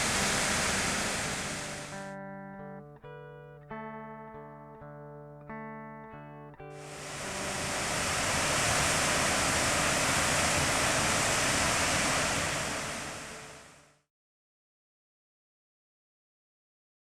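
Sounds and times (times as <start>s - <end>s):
waterfall rushing: 0.0s - 2.1s, 6.7s - 13.8s.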